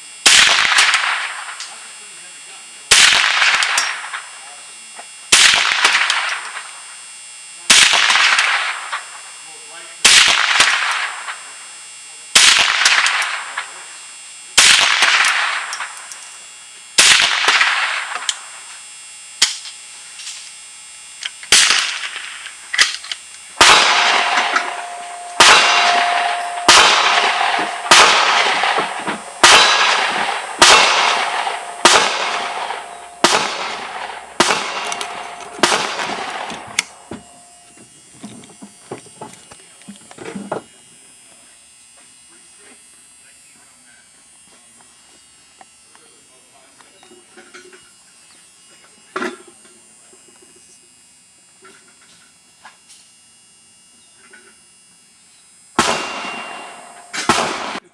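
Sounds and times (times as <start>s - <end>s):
rifle gunshots: 0.2s - 1.6s, 2.9s - 4.3s, 5.3s - 6.8s, 7.7s - 9.2s, 10.0s - 11.6s, 12.4s - 13.9s, 14.6s - 16.1s, 17.0s - 18.6s, 21.5s - 37.6s, 55.8s - 57.9s.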